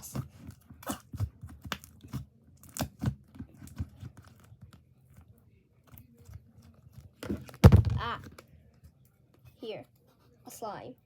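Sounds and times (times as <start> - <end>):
slime squishing: 0.0 - 7.2.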